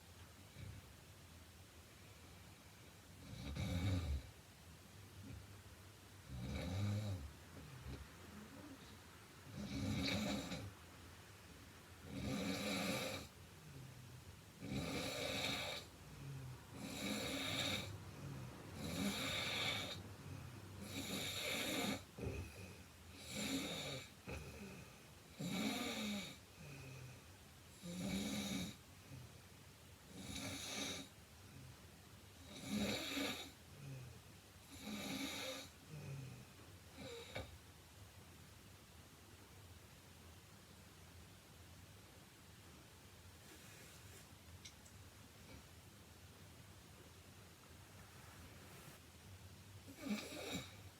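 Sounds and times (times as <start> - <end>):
woman snoring: 3.2 - 4.3, 6.3 - 10.7, 12.0 - 13.4, 14.6 - 28.8, 30.1 - 31.1, 32.4 - 34.0, 34.7 - 37.5, 49.9 - 50.9.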